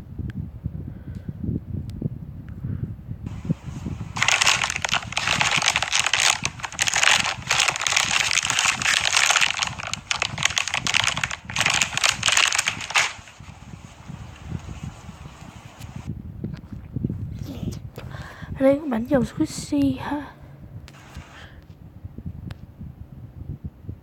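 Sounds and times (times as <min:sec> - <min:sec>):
dense crackling and crinkling: 0:03.3 - 0:16.1.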